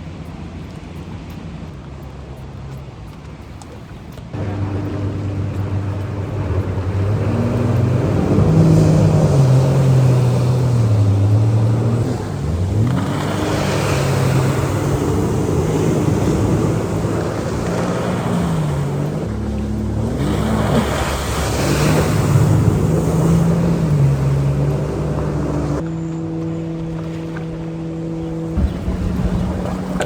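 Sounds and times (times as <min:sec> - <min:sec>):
rush of wind and water: 0:00.0 - 0:30.0
jet ski engine revving: 0:04.3 - 0:30.0.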